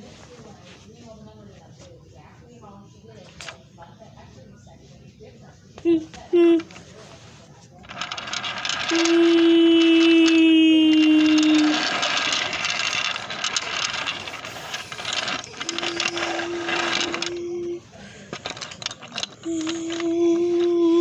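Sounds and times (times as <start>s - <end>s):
toy trains clicking and rattling: 5.9s - 7.0s, 7.8s - 21.0s.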